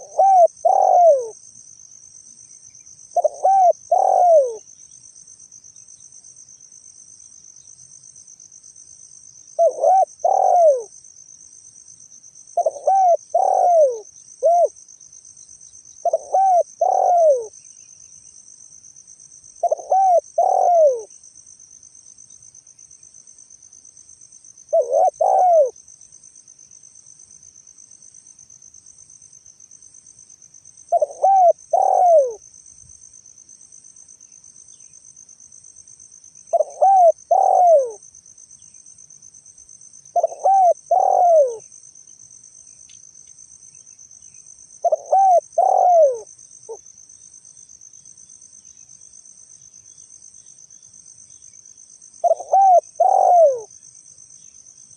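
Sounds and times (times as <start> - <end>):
dove cooing: 0.0 - 1.4, 3.1 - 4.7, 9.6 - 10.9, 12.6 - 14.8, 16.0 - 17.6, 19.6 - 21.1, 24.7 - 25.8, 30.9 - 32.4, 36.5 - 38.0, 40.1 - 41.7, 44.8 - 46.8, 52.2 - 53.7
high insect trill: 0.0 - 54.9.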